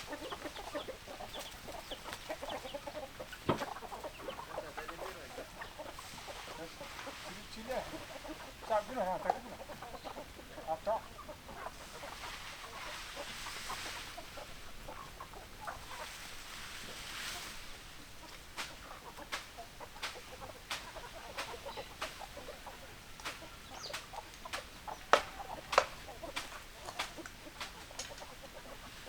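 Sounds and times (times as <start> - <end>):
chickens clucking: 0.0 - 29.0
rustling hiss: 0.0 - 29.0
beaks pecking at feed: 18.6 - 28.8.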